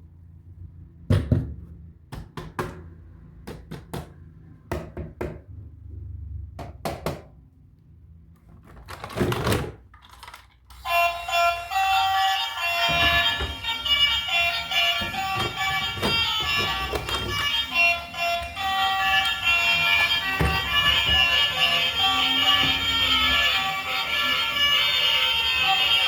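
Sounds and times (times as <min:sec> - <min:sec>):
background music: 0:10.9 - 0:26.0
toy vehicles knocking: 0:12.6 - 0:26.0.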